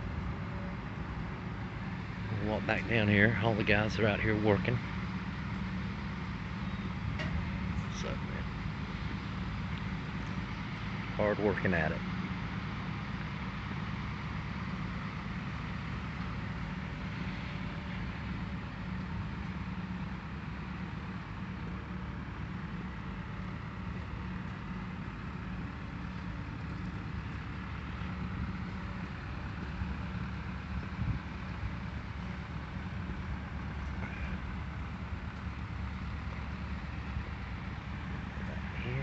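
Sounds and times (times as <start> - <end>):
diesel engine running steadily: 0.0 - 39.0.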